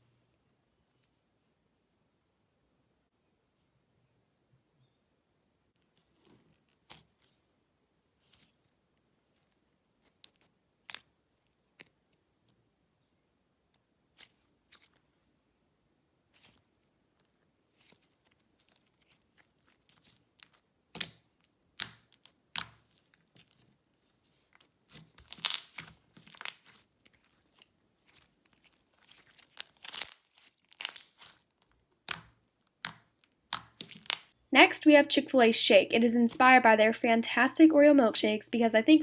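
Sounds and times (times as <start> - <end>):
sticky slime clicks and pops: 32.0 - 34.2.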